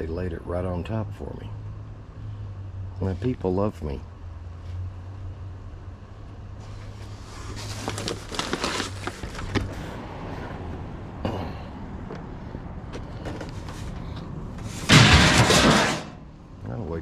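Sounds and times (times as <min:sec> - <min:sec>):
scrap rustling and clattering: 0:06.6 - 0:09.8, 0:13.0 - 0:16.3.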